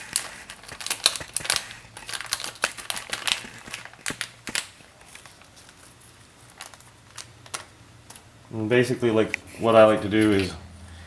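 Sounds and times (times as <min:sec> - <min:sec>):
plastic packaging crinkling: 0:00.0 - 0:08.3.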